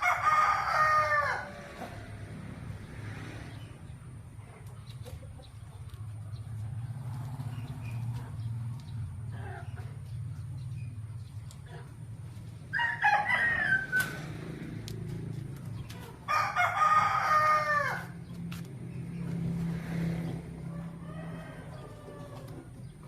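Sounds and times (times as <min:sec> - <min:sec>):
roosters crowing: 0:00.0 - 0:04.1, 0:11.6 - 0:23.0.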